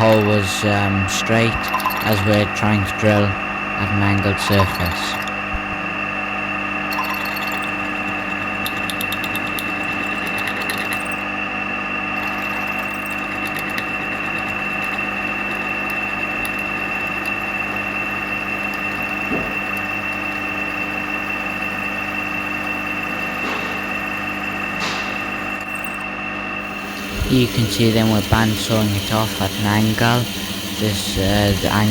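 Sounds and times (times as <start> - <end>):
machine tool high whine: 0.0 - 31.9.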